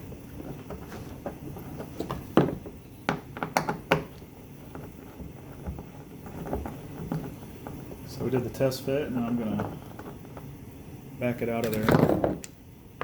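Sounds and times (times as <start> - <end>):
hand tools clicking and knocking: 0.3 - 10.5.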